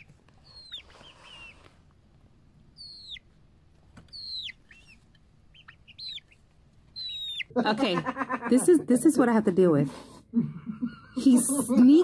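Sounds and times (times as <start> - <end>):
soft bird chirps: 0.0 - 1.7, 2.7 - 3.3, 4.0 - 7.5.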